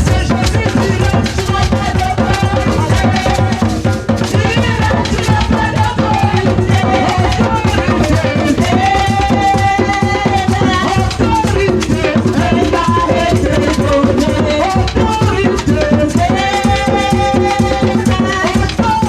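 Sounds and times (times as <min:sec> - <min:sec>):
instrumental gospel music: 0:00.0 - 0:19.0.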